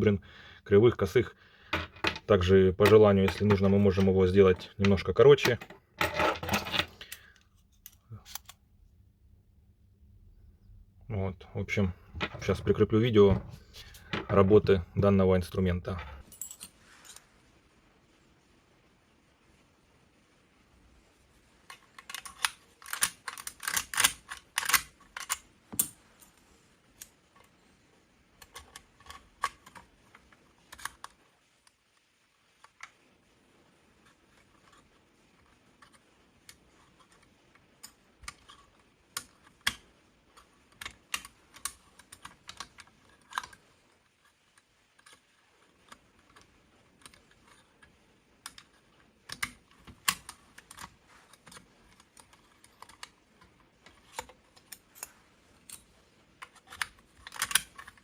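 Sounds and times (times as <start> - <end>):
lock tool metal clicks and rattles: 1.8 - 7.2, 21.7 - 26.3, 56.4 - 58.0.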